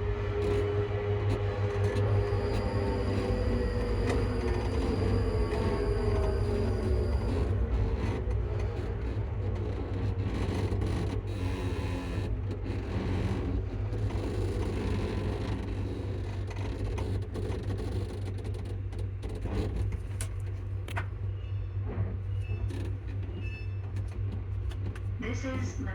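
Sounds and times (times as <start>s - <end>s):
electric train running: 0.0s - 9.3s.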